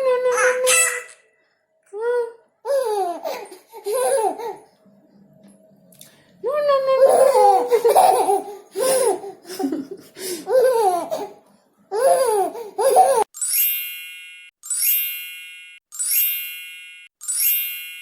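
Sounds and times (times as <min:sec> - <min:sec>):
baby giggling: 0:02.7 - 0:04.6, 0:07.0 - 0:13.3.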